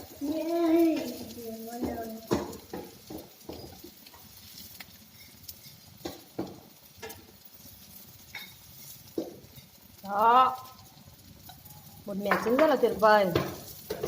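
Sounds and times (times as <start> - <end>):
utensils clicking on dishes: 0.2 - 7.5, 11.4 - 14.0.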